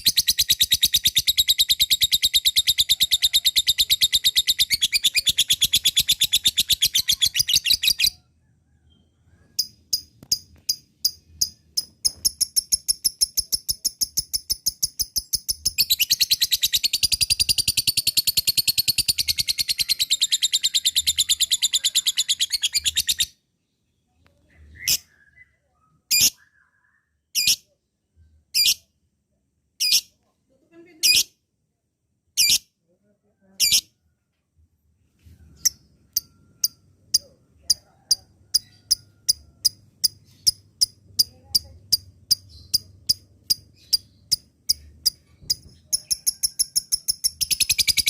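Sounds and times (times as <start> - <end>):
lovebird chattering trill: 0.0 - 8.2, 9.6 - 23.3, 33.6 - 33.9, 35.6 - 48.0
bird chirps: 0.0 - 28.9, 35.2 - 48.0.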